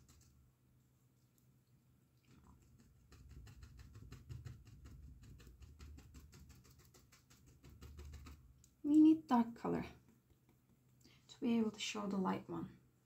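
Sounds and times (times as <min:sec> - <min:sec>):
paintbrush scratchy tapping: 0:00.0 - 0:00.4, 0:02.3 - 0:08.8, 0:09.6 - 0:11.0.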